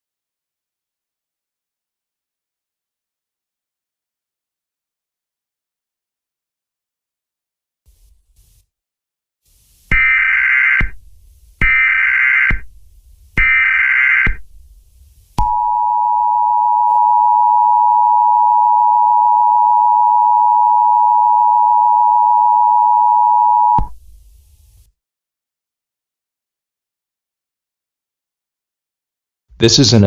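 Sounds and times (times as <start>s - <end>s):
buzzing digital data bursts: 9.9s - 11.0s, 11.6s - 12.7s, 13.4s - 14.4s
two-tone attention signal: 15.4s - 23.9s.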